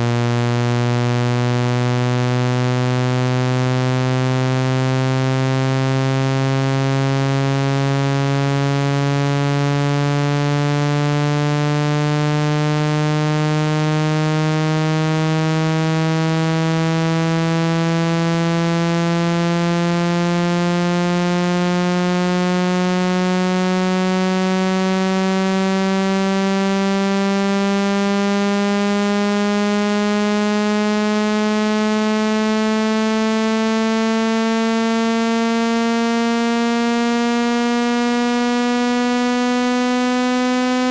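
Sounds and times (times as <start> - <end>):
low buzzy rising tone: 0.0 - 4.8.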